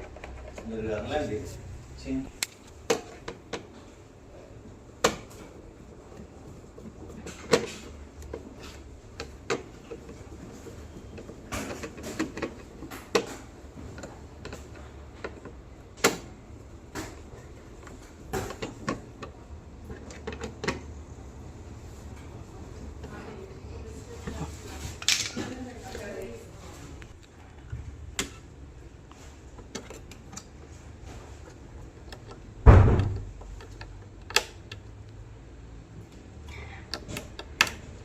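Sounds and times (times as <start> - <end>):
sharp clicks and knocks: 31.5 - 35.0.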